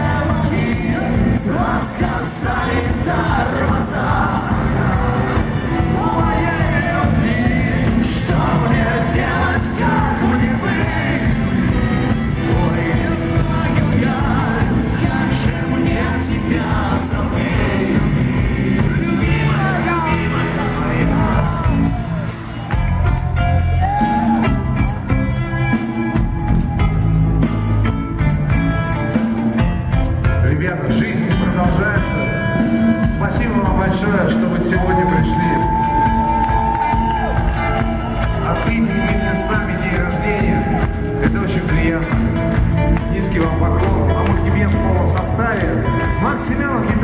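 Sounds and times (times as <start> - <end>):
person singing: 0.0 - 22.9
rock band playing live: 0.0 - 47.0.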